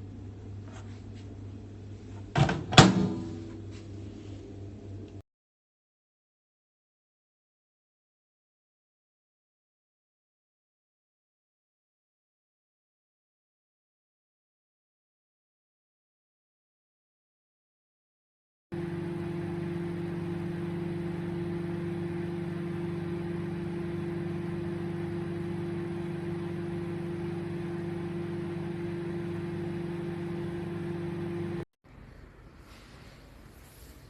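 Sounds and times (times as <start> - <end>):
microwave oven humming: 18.8 - 31.7.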